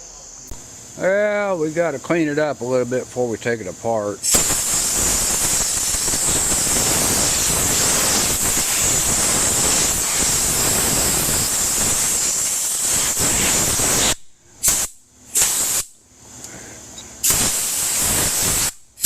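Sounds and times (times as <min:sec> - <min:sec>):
high-pressure cleaning jet hiss: 0:04.2 - 0:16.0, 0:17.2 - 0:18.9.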